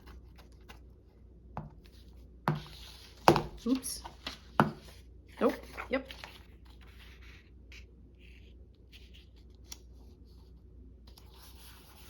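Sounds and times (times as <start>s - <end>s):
low steady hum: 0.0s - 12.0s
paper rustling: 2.7s - 10.5s.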